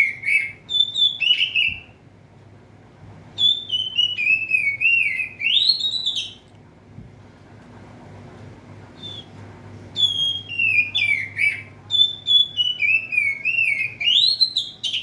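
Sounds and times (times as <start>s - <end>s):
bird singing whistled phrases: 0.0s - 2.0s, 3.4s - 6.4s, 9.0s - 9.4s, 10.0s - 15.0s.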